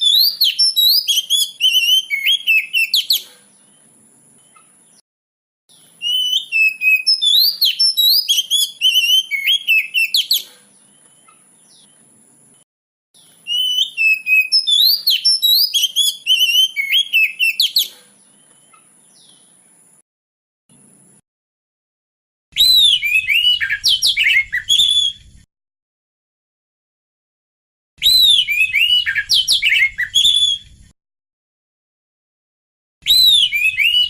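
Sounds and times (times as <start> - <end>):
bird song whistled notes: 0.0 - 3.4, 5.7 - 12.0, 13.2 - 19.5, 22.6 - 25.5, 28.0 - 30.9, 33.0 - 34.0.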